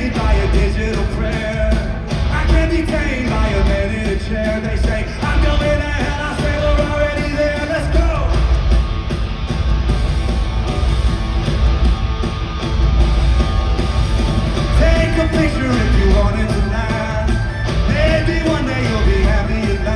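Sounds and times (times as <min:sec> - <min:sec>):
live rock band playing loudly: 0:00.0 - 0:19.9
person singing: 0:14.7 - 0:19.9.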